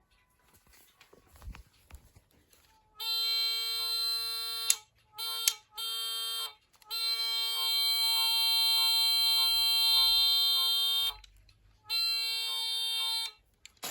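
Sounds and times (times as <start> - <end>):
electronic train horn: 3.0 - 13.4.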